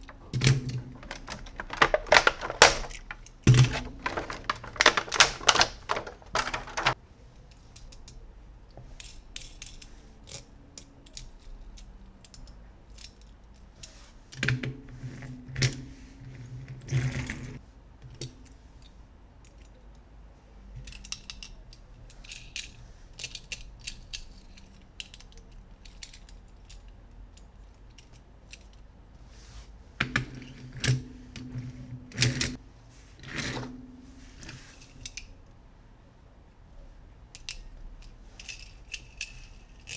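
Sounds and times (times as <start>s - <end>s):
plastic toy pieces clicking: 0.0s - 8.2s, 9.0s - 13.3s, 20.8s - 28.8s, 37.4s - 39.9s.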